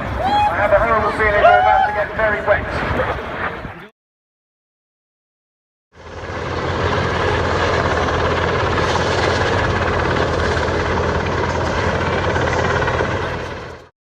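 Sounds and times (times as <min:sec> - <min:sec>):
helicopter engine and rotor: 0:05.9 - 0:13.9.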